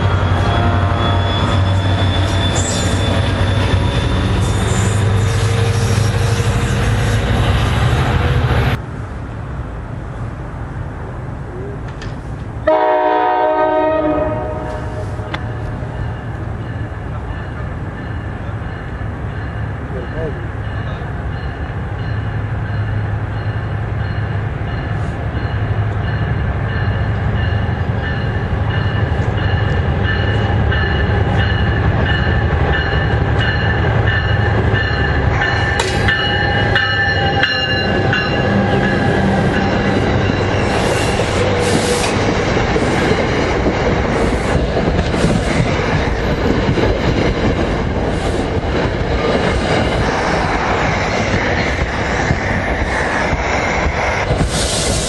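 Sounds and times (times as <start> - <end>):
high wheel squeal: 0.0 - 7.9, 35.3 - 42.3
train rolling past: 0.0 - 55.0.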